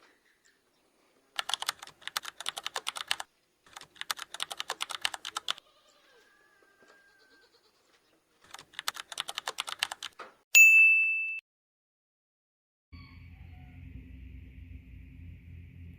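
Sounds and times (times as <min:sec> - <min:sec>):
rapid clicking: 0:01.4 - 0:05.6, 0:08.4 - 0:10.2.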